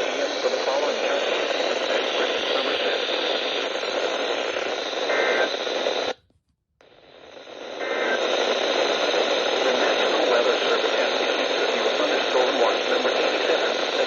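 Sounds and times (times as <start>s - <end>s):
radio static hiss: 0.0s - 6.2s, 6.8s - 14.0s.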